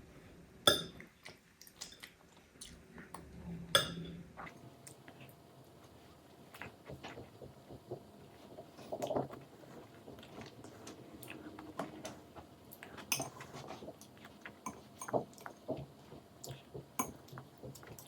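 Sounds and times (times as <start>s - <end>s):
dishes clinking: 0.7s - 1.0s, 3.8s - 4.2s, 13.1s - 13.6s
child chewing: 1.0s - 3.2s, 4.4s - 18.0s.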